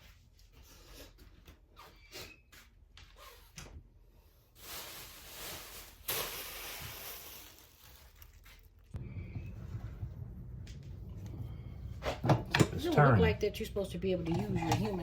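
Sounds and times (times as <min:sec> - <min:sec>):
rustling and handling noises: 0:04.4 - 0:09.0
low rumble: 0:09.0 - 0:12.5.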